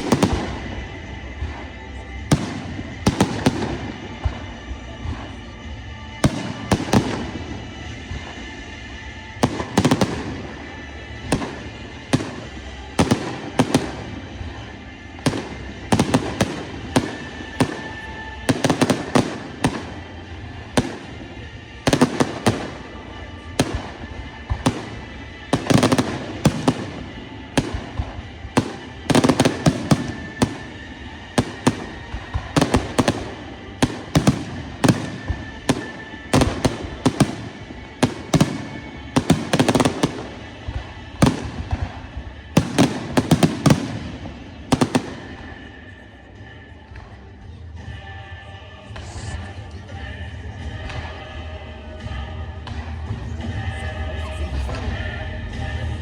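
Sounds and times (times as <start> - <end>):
fireworks bursting: 0.0 - 5.5, 6.2 - 8.6, 9.2 - 46.0
music: 0.0 - 56.0.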